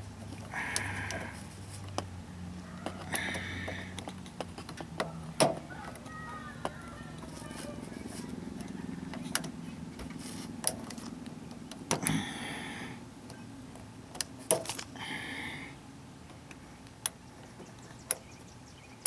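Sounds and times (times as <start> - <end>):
short scraping rustles: 10.0 - 11.1.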